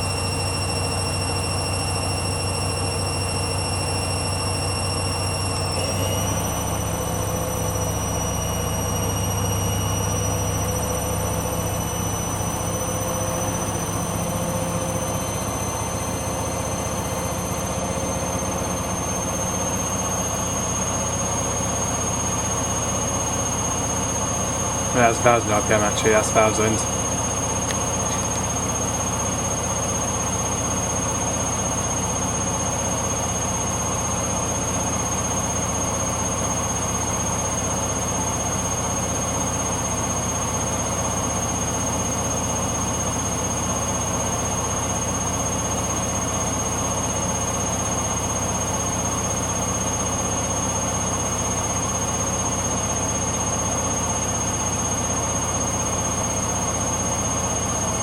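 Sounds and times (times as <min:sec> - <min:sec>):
high whine: 0:24.9 - 0:27.0.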